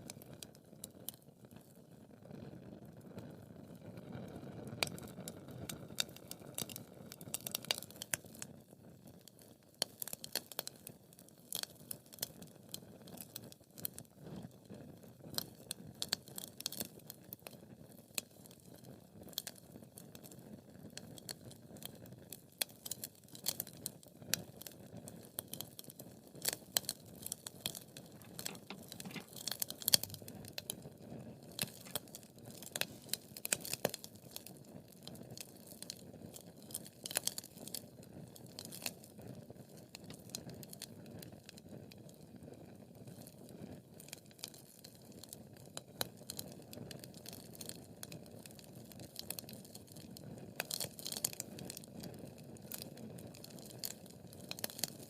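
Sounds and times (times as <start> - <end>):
wood fire crackling: 4.8 - 8.5, 9.2 - 13.9, 15.3 - 17.2, 24.4 - 42.2, 44.0 - 55.0.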